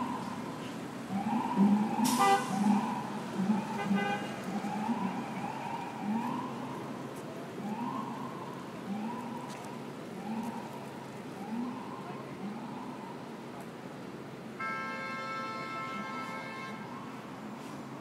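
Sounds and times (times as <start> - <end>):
emergency siren sweeping: 0.0 - 13.8
street traffic: 0.0 - 18.0
short horn blasts: 2.1 - 2.6, 14.6 - 16.9.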